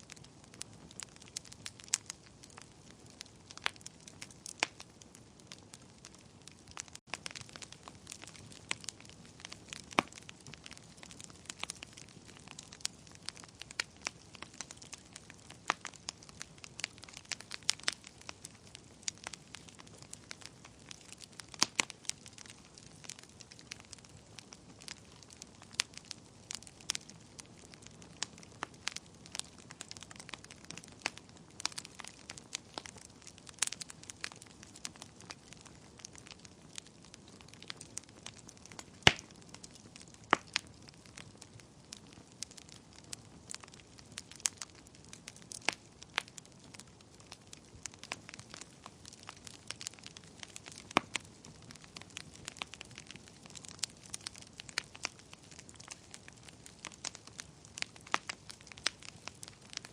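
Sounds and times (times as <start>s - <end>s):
wood fire crackling and popping: 0.0s - 59.9s.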